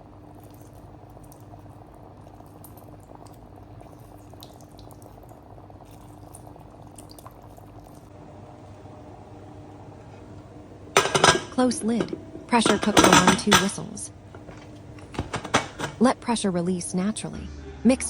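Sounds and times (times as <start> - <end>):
water and rice bubbling: 0.0 - 8.2
steady low hum: 0.0 - 18.0.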